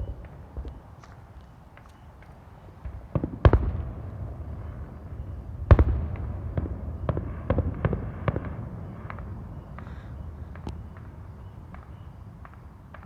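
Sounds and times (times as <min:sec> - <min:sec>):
fireworks bangs and booms: 0:02.8 - 0:13.0.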